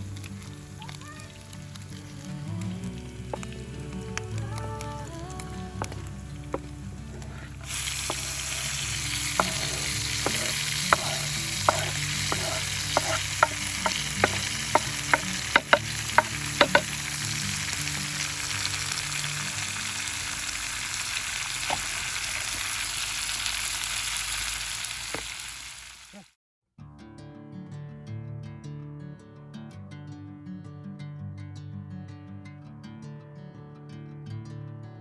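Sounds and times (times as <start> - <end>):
sharp pops and crackles: 0.0 - 19.8, 20.9 - 22.7
food sizzling in a pan: 0.0 - 26.3.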